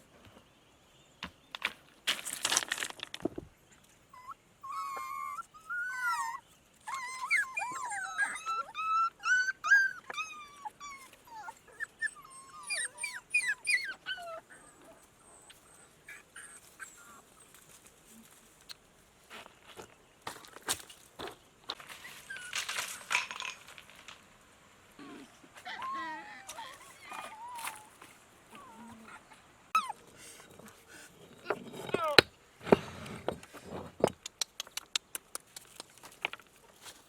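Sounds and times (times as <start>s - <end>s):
dog whining and whimpering: 4.1s - 15.5s, 25.0s - 32.2s.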